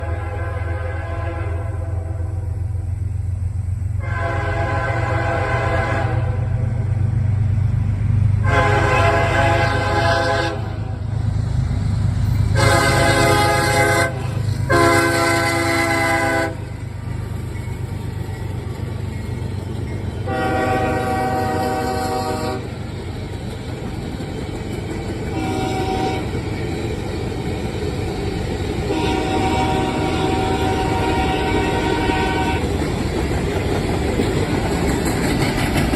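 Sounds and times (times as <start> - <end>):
locomotive air horn blasts: 0.0 - 2.6, 4.0 - 6.6, 8.4 - 11.0, 12.4 - 16.7, 20.2 - 22.7, 25.3 - 26.4, 28.9 - 32.8
locomotive engine rumble: 0.0 - 35.9.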